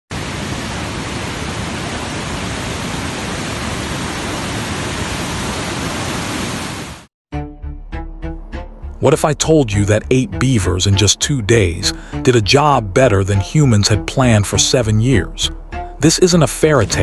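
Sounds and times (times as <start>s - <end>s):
music: 7.3s - 17.0s.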